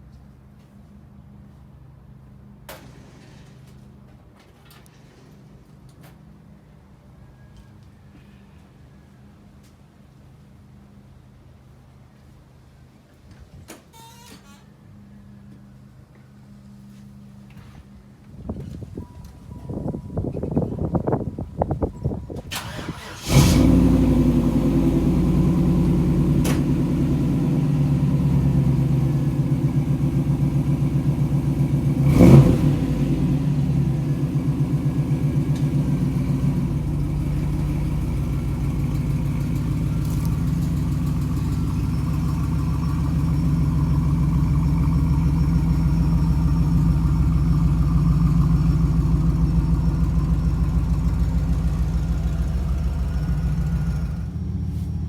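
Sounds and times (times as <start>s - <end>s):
car engine cranking: 22.4s - 54.5s
car engine idling: 22.5s - 55.0s
engine revving: 22.6s - 29.4s, 31.7s - 37.6s.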